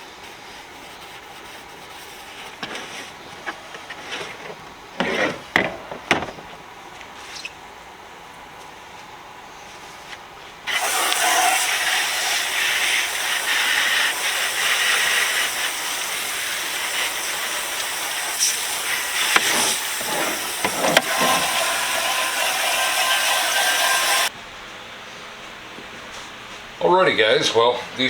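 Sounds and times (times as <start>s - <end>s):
hose spraying water on metal: 10.7s - 24.3s.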